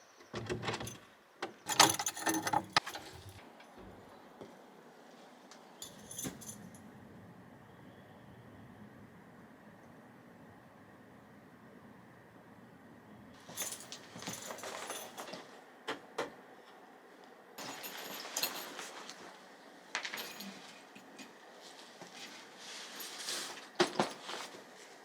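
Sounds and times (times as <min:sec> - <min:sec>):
rustling and clinking handling noise: 0:01.6 - 0:04.1, 0:05.8 - 0:06.8, 0:13.4 - 0:15.6, 0:17.6 - 0:25.0.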